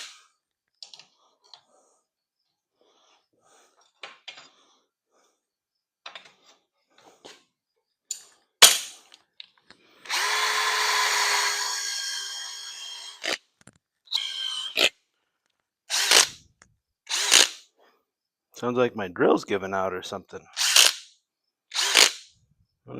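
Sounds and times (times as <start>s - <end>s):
power drill whining: 9.9s - 13.4s, 14.1s - 14.9s, 15.9s - 16.4s, 17.1s - 17.6s, 21.7s - 22.2s.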